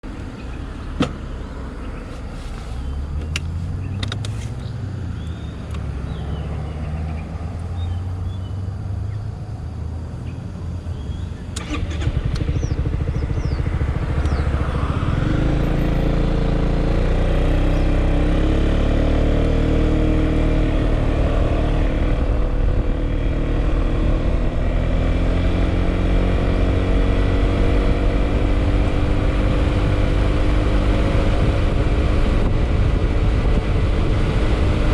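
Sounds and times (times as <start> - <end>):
scooter engine: 10.7 - 34.9.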